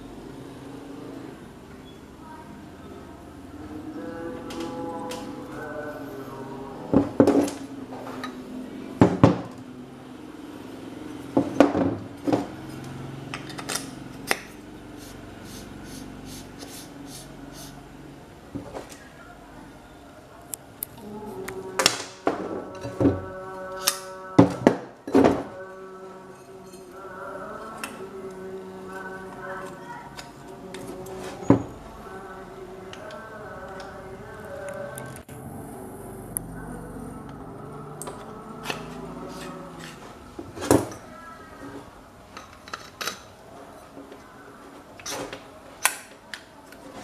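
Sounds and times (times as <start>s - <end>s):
low steady hum: 26.1s - 40.6s.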